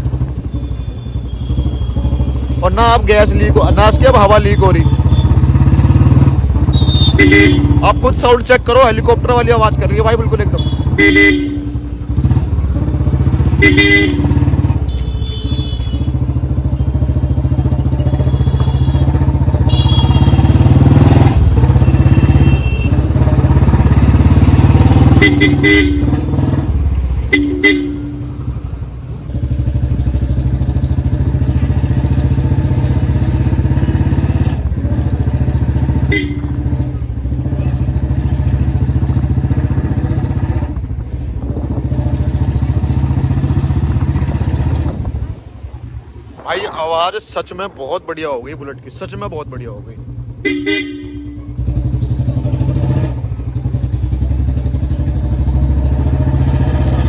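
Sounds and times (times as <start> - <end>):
motorcycle engine running: 0.0 - 46.5, 48.4 - 57.0
vehicle horns beeping: 0.5 - 2.8, 4.2 - 5.6, 6.6 - 8.2, 10.4 - 11.9, 13.4 - 16.3, 18.0 - 20.9, 21.6 - 23.2, 24.9 - 26.6, 27.2 - 28.5, 35.9 - 36.8, 50.3 - 51.8.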